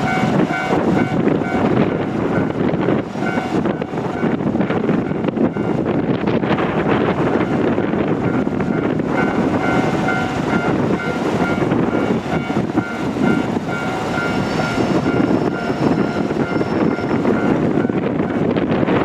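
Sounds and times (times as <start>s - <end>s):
freight train wheels rumbling: 0.0s - 19.0s
high-pitched ringing tone: 8.7s - 18.0s.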